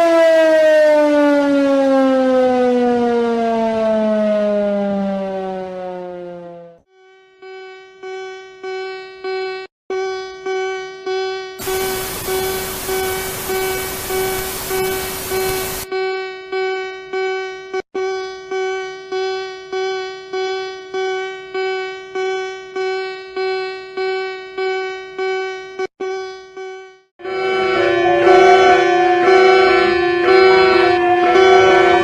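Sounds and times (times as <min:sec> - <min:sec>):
buzzy pulsing alarm tone: 0:06.9 - 0:32.0
static hiss: 0:11.6 - 0:15.9.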